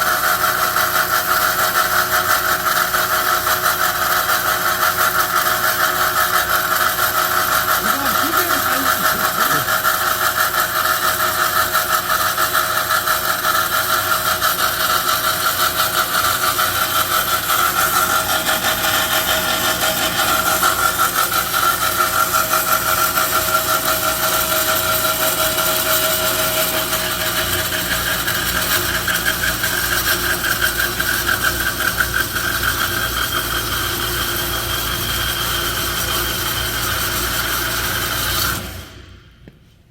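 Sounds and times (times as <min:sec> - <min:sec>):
band saw cutting metal tube: 0:13.2 - 0:38.7.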